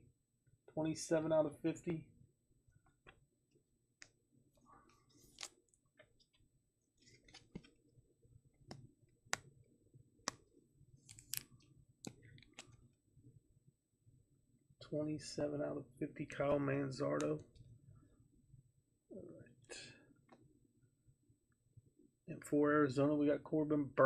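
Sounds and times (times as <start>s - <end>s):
trading cards rustling: 5.1s - 5.6s, 7.0s - 7.8s, 11.0s - 12.8s.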